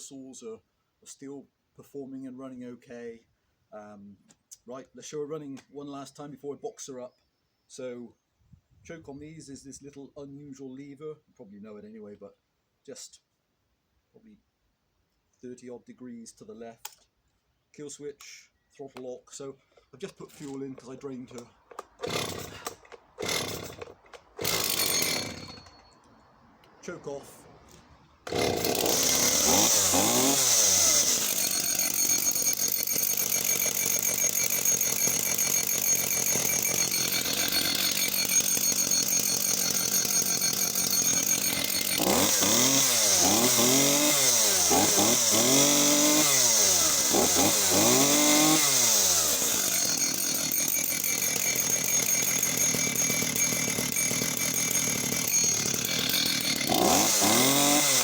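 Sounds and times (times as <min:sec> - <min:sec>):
chainsaw engine revving and idling: 0:21.7 - 0:25.9, 0:27.2 - 0:58.0.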